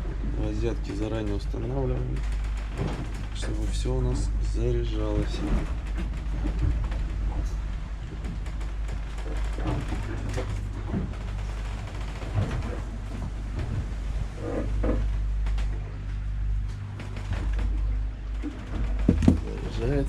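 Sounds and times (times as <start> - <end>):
generator humming: 0.0 - 20.0
knocks and clicks: 16.6 - 19.8.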